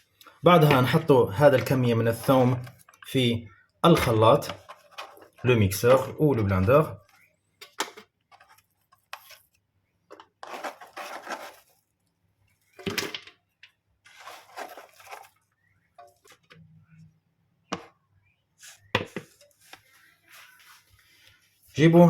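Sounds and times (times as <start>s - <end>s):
rustling scrapes: 4.0s - 5.5s, 8.3s - 12.0s, 14.0s - 16.5s, 18.6s - 21.8s.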